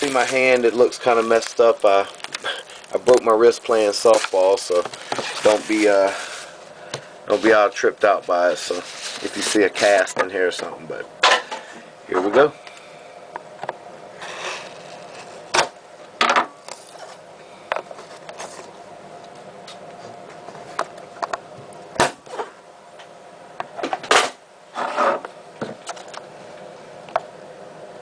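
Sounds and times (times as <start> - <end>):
cardboard tearing: 3.8 - 6.6.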